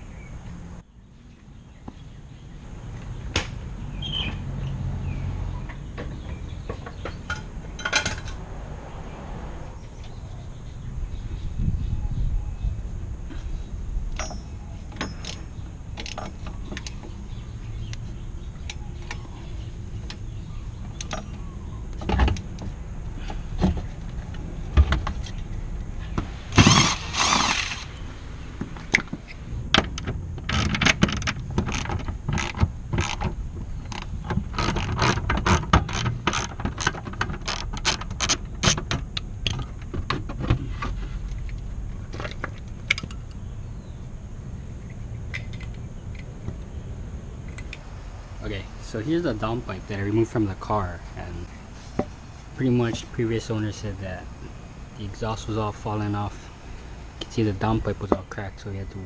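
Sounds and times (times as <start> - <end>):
low steady rumble: 0.0 - 59.0
metal tools clinking: 14.2 - 16.4.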